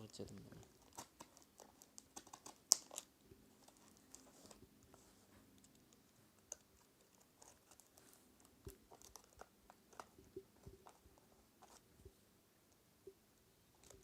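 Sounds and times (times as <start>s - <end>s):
parcel packaging crinkling: 0.0s - 4.6s, 6.4s - 10.2s.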